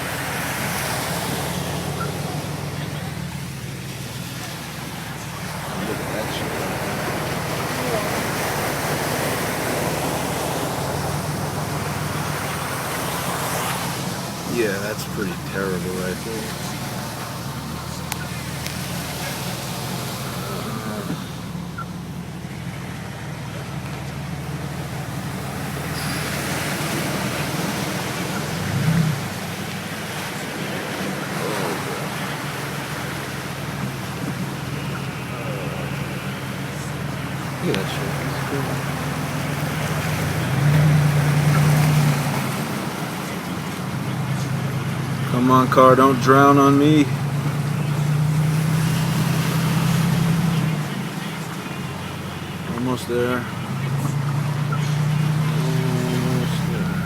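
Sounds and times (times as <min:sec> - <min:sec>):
heavy rain on driving car: 0:00.0 - 0:57.0
water rushing and splashing: 0:00.0 - 0:57.0.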